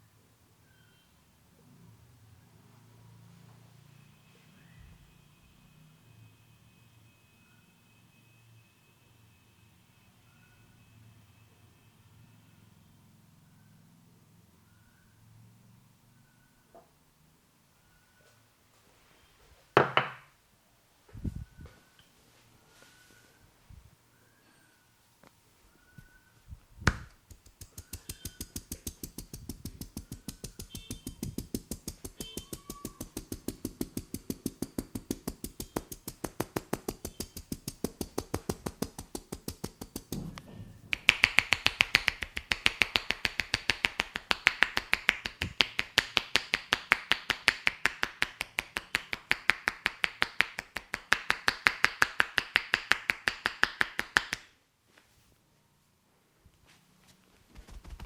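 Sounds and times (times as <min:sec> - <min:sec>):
rapid hand strikes: 0:26.9 - 0:54.5.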